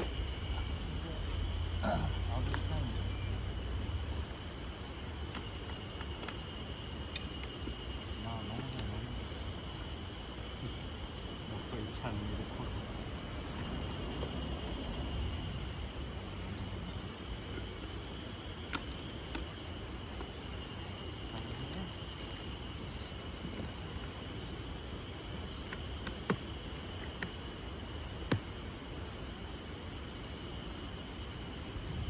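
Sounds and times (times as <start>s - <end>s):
high-pitched insect drone: 0.0s - 26.0s
sharp clicks: 7.1s - 7.6s.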